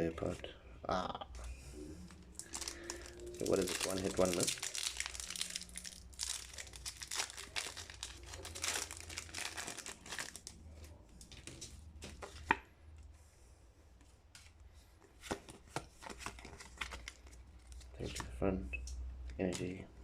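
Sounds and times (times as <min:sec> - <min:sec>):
foil wrapper crinkling and tearing: 0:02.3 - 0:10.6.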